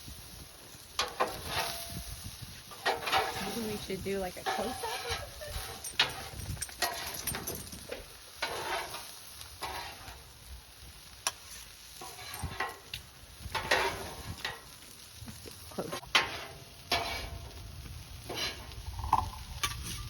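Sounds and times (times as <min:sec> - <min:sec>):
food sizzling on a grill: 0:00.0 - 0:20.0
spatula scraping and tapping: 0:02.7 - 0:07.2, 0:08.4 - 0:10.2, 0:11.2 - 0:14.7, 0:16.0 - 0:17.4.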